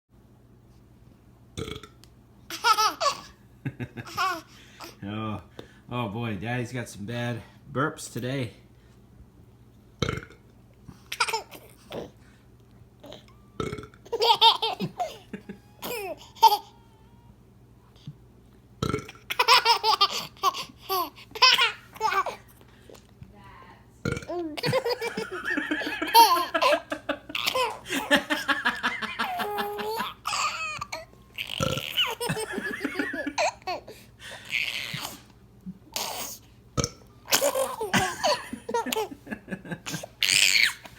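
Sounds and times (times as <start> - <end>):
man burping: 1.6 - 2.0, 10.0 - 10.4, 13.6 - 14.0, 18.8 - 19.2, 24.0 - 24.4, 36.8 - 37.0
baby laughing: 2.5 - 3.3, 4.0 - 5.0, 11.1 - 12.1, 13.0 - 17.2, 19.3 - 22.4, 24.3 - 35.2, 37.3 - 40.9.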